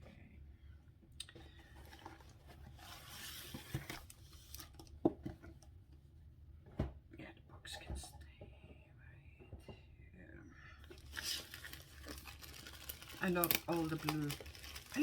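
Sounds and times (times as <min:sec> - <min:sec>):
packaging rustling and crinkling: 0:01.6 - 0:04.9, 0:10.9 - 0:15.0.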